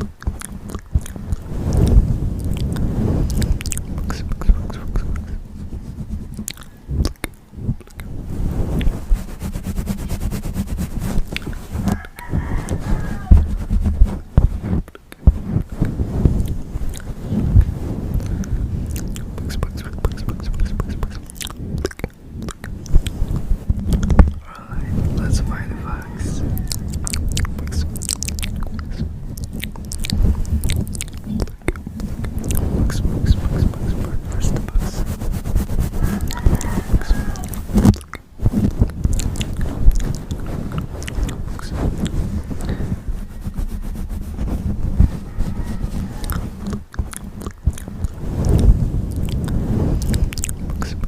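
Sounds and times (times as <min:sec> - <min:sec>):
insect chewing: 0:00.0 - 0:51.0
low rumble: 0:00.0 - 0:51.0.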